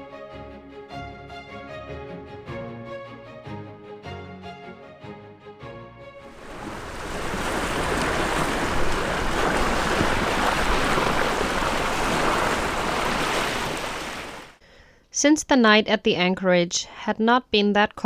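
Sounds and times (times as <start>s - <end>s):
sea waves: 6.3s - 14.6s
wind: 6.3s - 14.6s.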